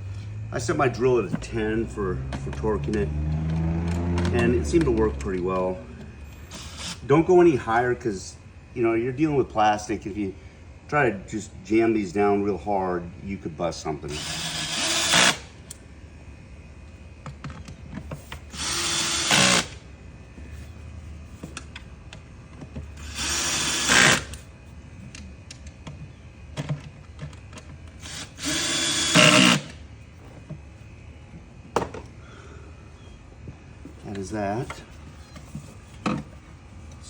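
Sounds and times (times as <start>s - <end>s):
cordless drill driving screws: 6.5s - 7.0s, 14.1s - 15.5s, 18.5s - 19.8s, 23.0s - 24.4s, 28.0s - 29.8s.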